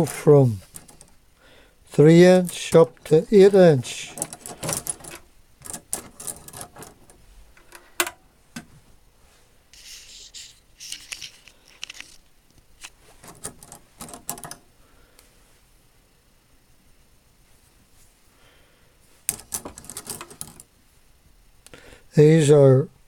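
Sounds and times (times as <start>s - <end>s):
short scraping rustles: 9.7s - 12.2s.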